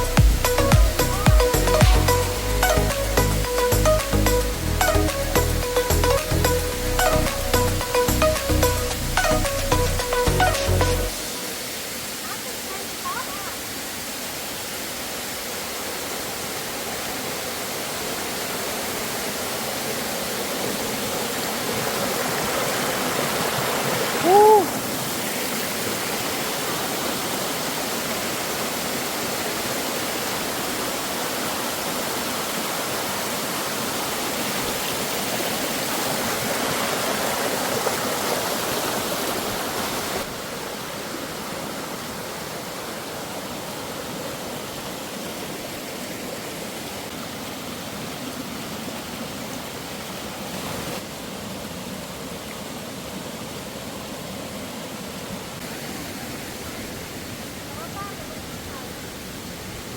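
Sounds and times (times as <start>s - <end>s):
waterfall rushing: 0.0s - 59.9s.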